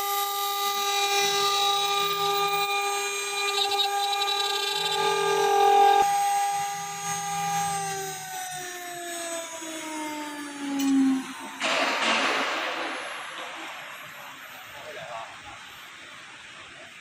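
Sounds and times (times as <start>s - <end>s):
spindle motor whining: 0.0s - 16.6s.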